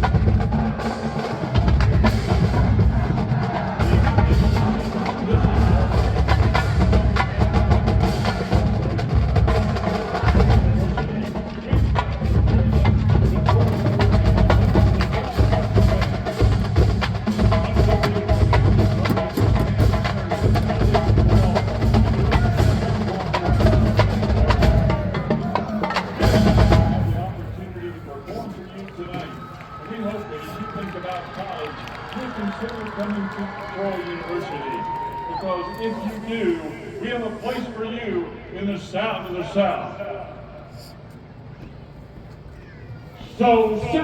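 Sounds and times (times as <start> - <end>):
marching drumline cadence: 0.0 - 44.0
heavy low drum hits: 11.7 - 27.6.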